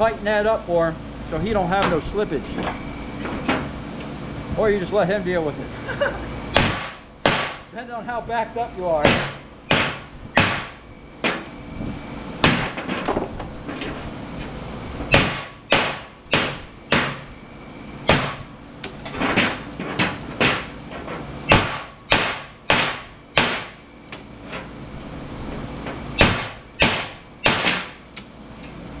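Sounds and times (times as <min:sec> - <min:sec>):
hammer striking metal: 0:06.5 - 0:07.7, 0:09.0 - 0:11.5, 0:15.1 - 0:17.3, 0:18.1 - 0:20.8, 0:21.5 - 0:23.8, 0:26.2 - 0:28.0.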